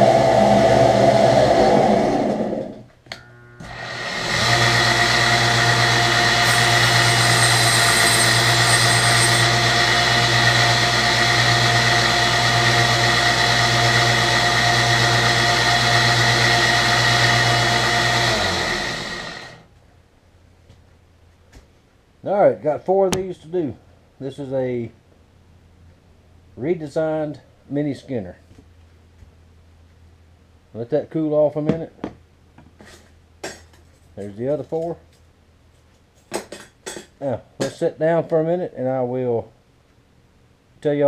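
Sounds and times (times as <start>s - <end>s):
electric motor running: 0.0s - 19.6s.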